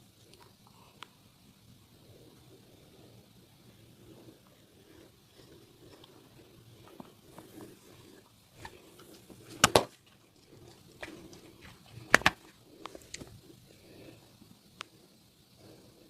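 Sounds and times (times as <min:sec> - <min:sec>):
faint clicks: 0:00.2 - 0:01.2, 0:14.4 - 0:15.7
sharp double snaps: 0:09.6 - 0:10.0, 0:12.1 - 0:13.3.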